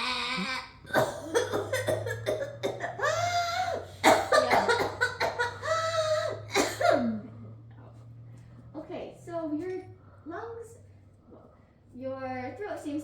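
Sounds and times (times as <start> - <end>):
child coughing: 0.4 - 7.2.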